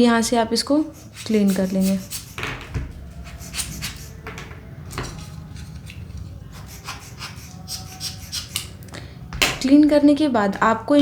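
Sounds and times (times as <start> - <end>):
cleaning tool clicking and rubbing: 6.6 - 8.7.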